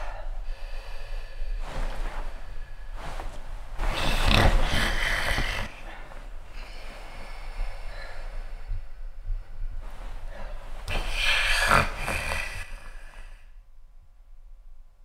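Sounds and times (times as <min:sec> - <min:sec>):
quiet breathing: 0:00.0 - 0:13.8
man snoring: 0:10.9 - 0:13.1.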